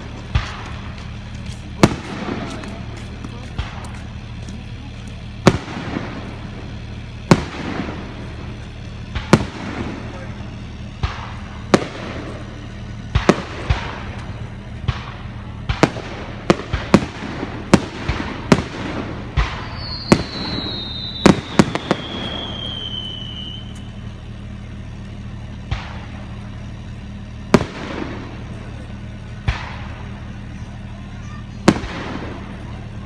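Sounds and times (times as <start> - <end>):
fireworks shells bursting: 0.0 - 30.9
firework whistle gliding down: 19.6 - 24.0.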